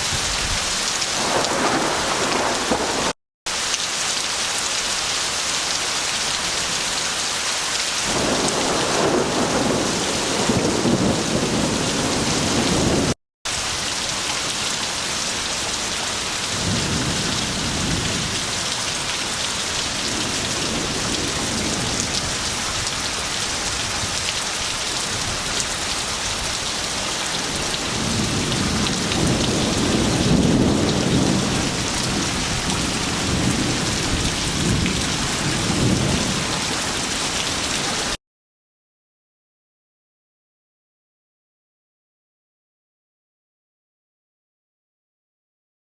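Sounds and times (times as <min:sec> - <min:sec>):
heavy rain pouring: 0:00.0 - 0:38.2
thunder rolling: 0:01.2 - 0:03.1, 0:08.1 - 0:13.2, 0:16.5 - 0:18.5, 0:27.9 - 0:36.5.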